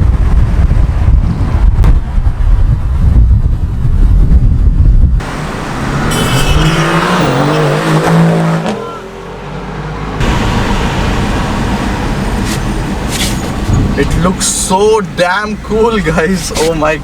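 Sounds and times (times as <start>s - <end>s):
wind buffeting microphone: 0.0s - 7.4s, 10.2s - 14.5s
road and wind noise: 0.0s - 17.0s
car engine revving: 5.2s - 14.7s.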